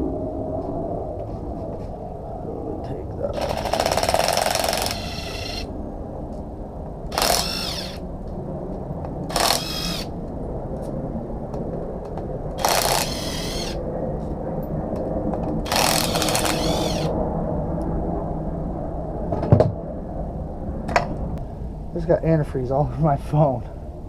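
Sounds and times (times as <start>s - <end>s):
steady low hum: 0.0s - 24.0s
power tool motor whine: 3.4s - 5.7s, 7.1s - 8.0s, 9.3s - 10.1s, 12.6s - 13.8s, 15.6s - 17.1s.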